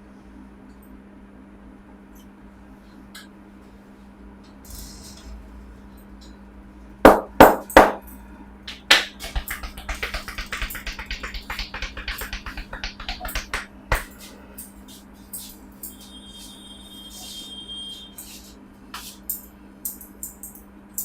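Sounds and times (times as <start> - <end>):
rhythmic pats and taps: 7.1 - 8.0, 8.7 - 15.6
hands slapping a head: 8.7 - 14.2.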